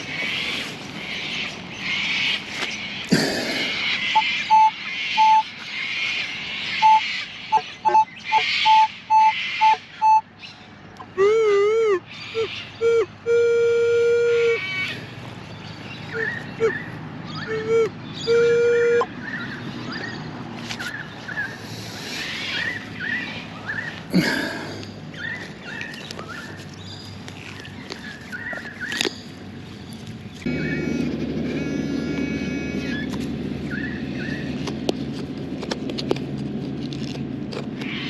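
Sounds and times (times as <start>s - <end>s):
metal detector tone and beeps: 4.2s - 5.5s, 6.8s - 7.1s.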